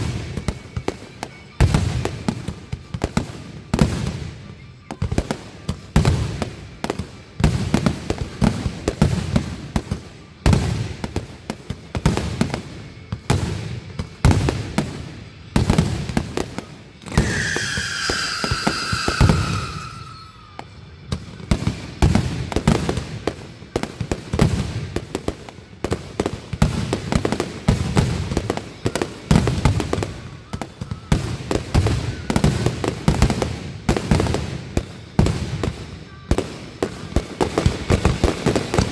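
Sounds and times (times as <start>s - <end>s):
fireworks booms and crackling: 0.0s - 38.9s
firework falling whistle: 17.1s - 20.8s.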